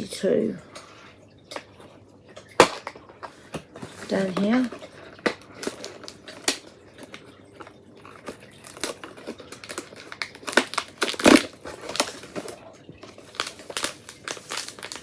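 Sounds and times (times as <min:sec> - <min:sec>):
cardboard packaging crinkling: 0:02.5 - 0:15.0
loud cardboard crunch: 0:08.2 - 0:12.6.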